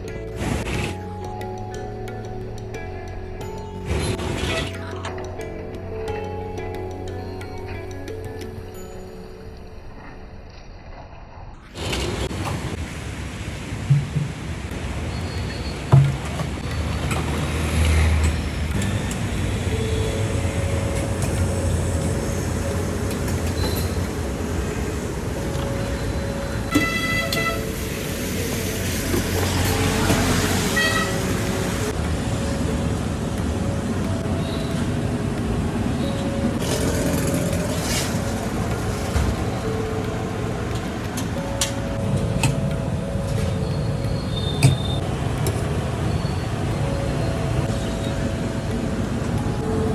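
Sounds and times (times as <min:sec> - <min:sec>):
road noise: 0:00.0 - 0:49.9
vehicle engines running: 0:11.7 - 0:49.9.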